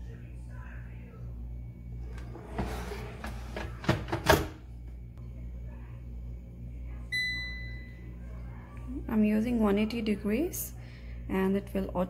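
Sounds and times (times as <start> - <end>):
air fryer basket sliding: 2.0 - 4.6.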